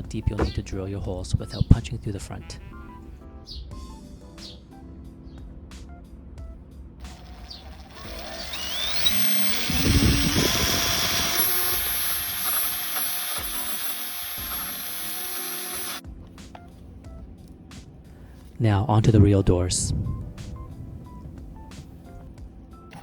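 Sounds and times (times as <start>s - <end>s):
power drill boring into wood: 7.0s - 16.0s.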